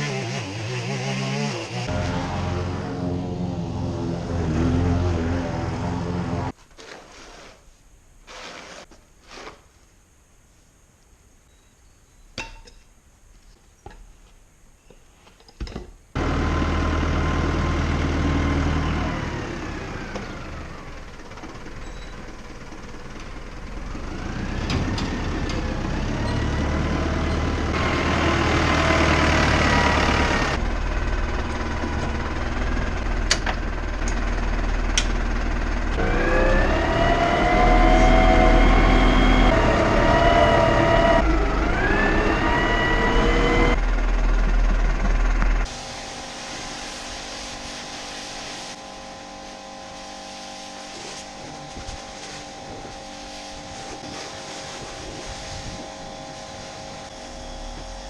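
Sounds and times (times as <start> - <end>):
tractor engine revving: 0.0 - 6.6, 16.2 - 46.4
climbing whine: 1.6 - 6.5, 24.2 - 46.3, 48.8 - 58.0.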